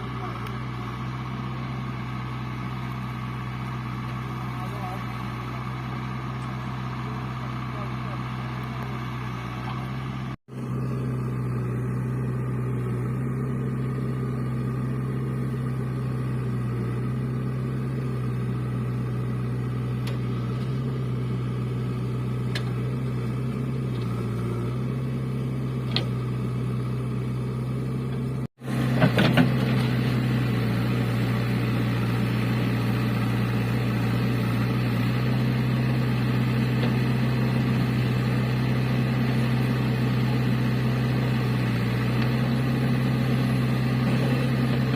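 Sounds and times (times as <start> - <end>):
diesel engine droning: 0.0 - 44.9.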